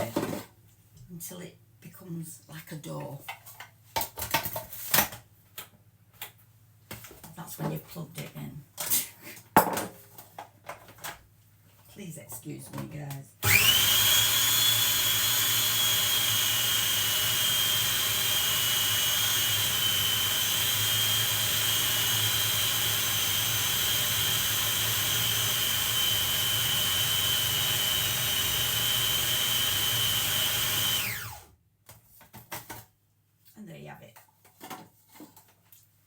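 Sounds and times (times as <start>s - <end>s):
food processor motor whining: 13.4s - 31.5s.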